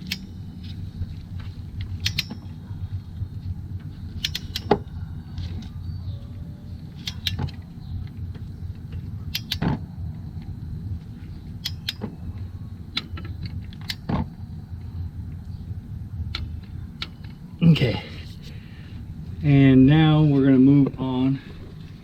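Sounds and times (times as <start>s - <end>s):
steady low hum: 0.0s - 22.0s
wrench clicking against metal: 2.0s - 2.4s, 4.2s - 4.7s.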